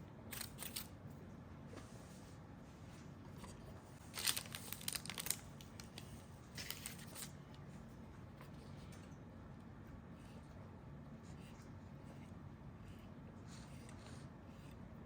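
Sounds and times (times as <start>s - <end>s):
crinkling and rustling: 3.0s - 7.4s.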